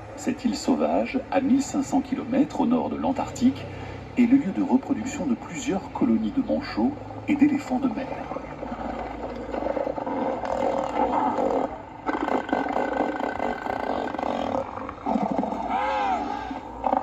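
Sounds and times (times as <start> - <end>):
elephant seals bellowing: 6.5 - 17.0.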